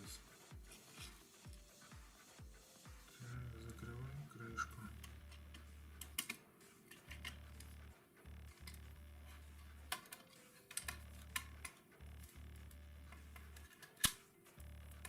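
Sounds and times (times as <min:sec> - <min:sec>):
faint low hum: 0:03.2 - 0:15.0
plastic toy clicks and taps: 0:05.0 - 0:07.4.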